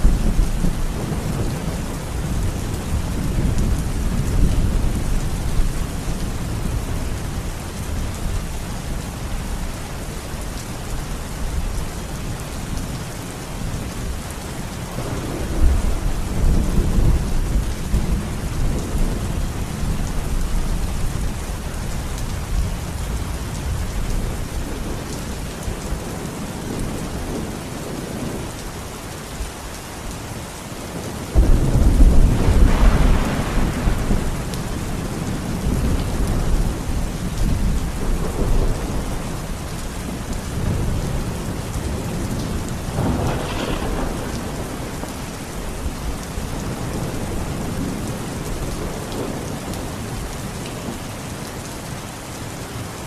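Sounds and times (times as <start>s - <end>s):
steady rain: 0.0s - 53.0s
thunder rumbling: 14.9s - 21.8s, 31.3s - 50.0s.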